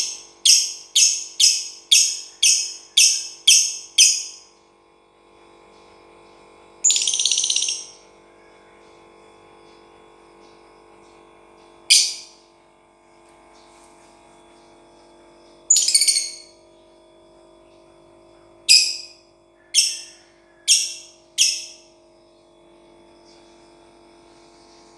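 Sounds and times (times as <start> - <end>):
lovebird shrill calls: 0.0 - 4.4, 6.9 - 8.0, 11.9 - 12.3, 15.7 - 16.5, 18.7 - 21.8.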